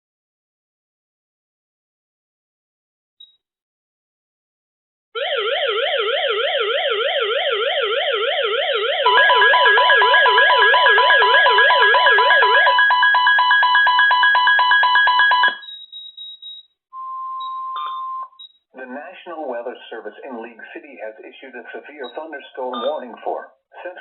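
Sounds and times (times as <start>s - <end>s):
high beeping tones: 9.0s - 18.6s, 22.0s - 23.2s
warbling alert tone: 9.1s - 13.6s, 22.7s - 23.2s.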